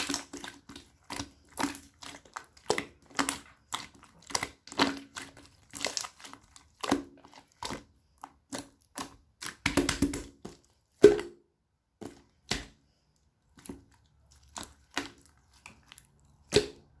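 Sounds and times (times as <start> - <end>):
slime clicking and popping: 8.5 - 11.4, 13.6 - 17.0.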